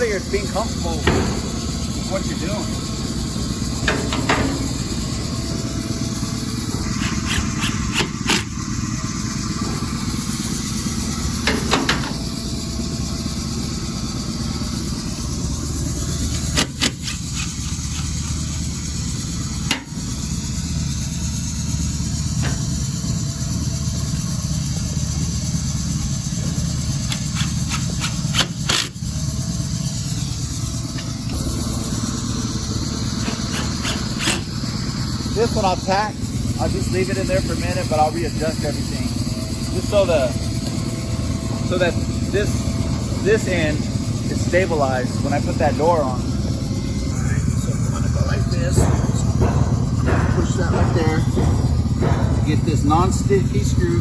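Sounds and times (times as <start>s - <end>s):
low engine-like drone: 0.0s - 54.0s
sharp knocks and clicks: 0.9s - 2.1s, 3.8s - 4.9s, 6.7s - 8.5s, 11.4s - 12.3s, 27.0s - 29.0s, 33.2s - 34.8s, 47.6s - 54.0s.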